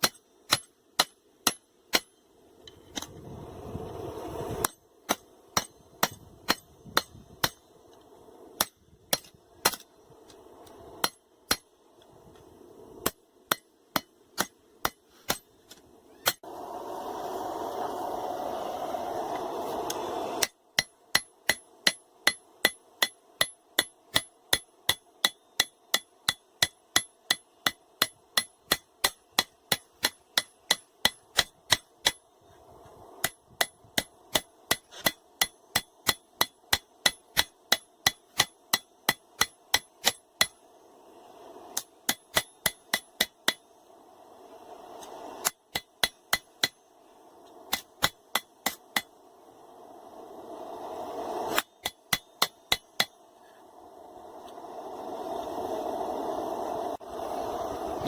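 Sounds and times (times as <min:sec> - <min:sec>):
hammer striking steel on anvil: 0:00.0 - 0:03.1, 0:04.6 - 0:07.7, 0:08.6 - 0:09.9, 0:11.0 - 0:11.8, 0:13.0 - 0:15.5, 0:19.9 - 0:32.3, 0:33.2 - 0:40.7, 0:41.8 - 0:43.7, 0:45.4 - 0:46.9, 0:47.7 - 0:49.2, 0:51.5 - 0:53.3
steady rushing noise: 0:02.6 - 0:14.1, 0:38.4 - 0:58.0.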